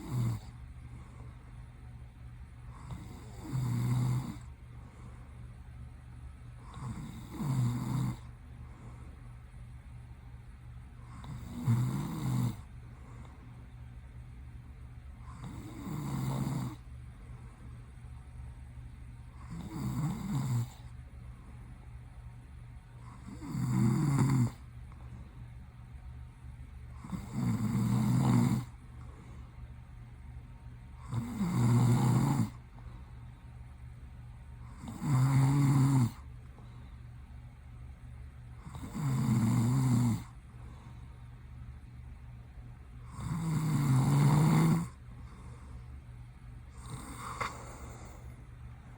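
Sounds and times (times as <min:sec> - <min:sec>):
man snoring: 0:00.0 - 0:00.6, 0:02.7 - 0:04.5, 0:06.6 - 0:08.3, 0:11.0 - 0:12.7, 0:15.2 - 0:16.8, 0:19.3 - 0:21.0, 0:23.0 - 0:24.7, 0:26.9 - 0:29.1, 0:31.0 - 0:32.6, 0:34.6 - 0:36.3, 0:38.6 - 0:40.4, 0:43.0 - 0:45.5, 0:46.7 - 0:48.4.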